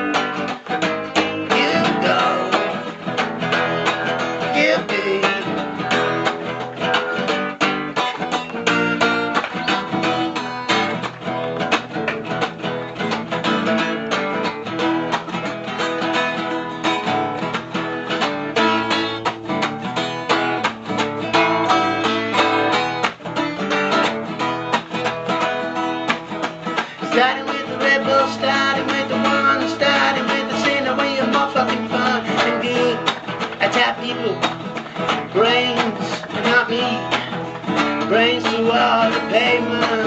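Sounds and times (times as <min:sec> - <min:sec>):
acoustic guitar strumming: 0:00.0 - 0:40.0.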